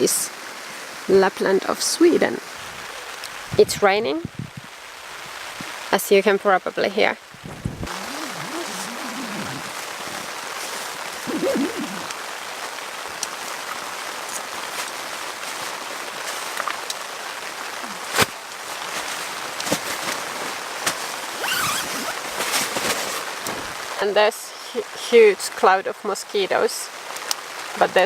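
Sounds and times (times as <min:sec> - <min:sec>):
rain falling on a tent: 0:00.0 - 0:28.0
heavy raindrops striking: 0:01.1 - 0:25.6.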